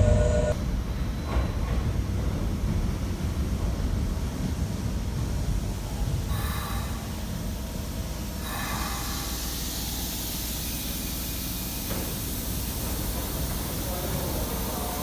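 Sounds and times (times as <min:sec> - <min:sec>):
train low rumble: 0:00.0 - 0:15.0
compressed air hissing: 0:08.2 - 0:14.0.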